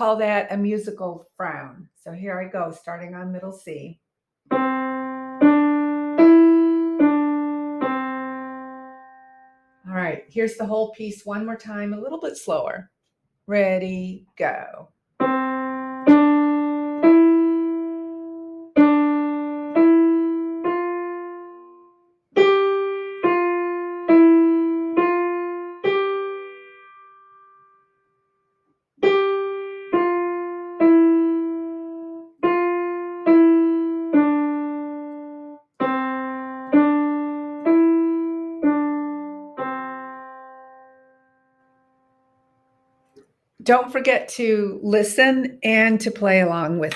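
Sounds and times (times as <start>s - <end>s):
piano melody of single notes: 4.5s - 9.9s, 15.2s - 44.1s.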